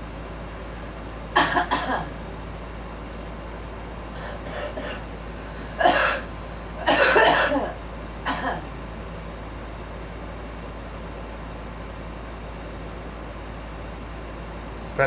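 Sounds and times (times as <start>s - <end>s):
girl coughing: 1.4s - 2.2s, 4.2s - 8.7s.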